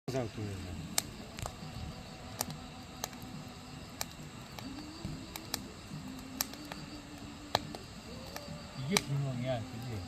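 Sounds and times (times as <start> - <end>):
campfire crackling and popping: 0.1 - 10.0.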